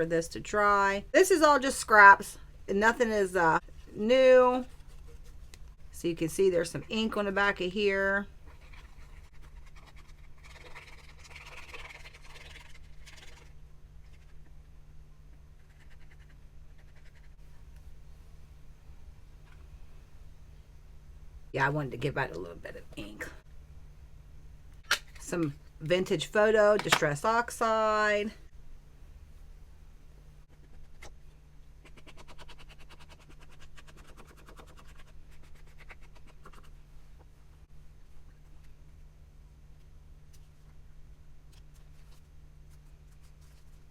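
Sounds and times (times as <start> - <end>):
scratchy rubbing on paper: 8.4 - 14.6, 15.6 - 17.4, 31.8 - 36.8.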